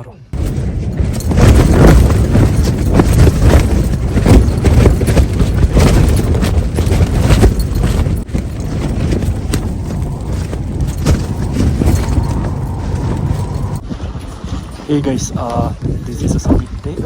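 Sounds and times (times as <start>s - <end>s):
wind buffeting microphone: 0.3s - 17.0s.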